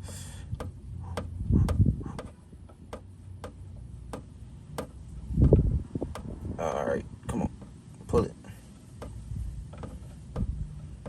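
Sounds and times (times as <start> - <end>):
low thuds: 0.0 - 6.6, 9.0 - 11.0.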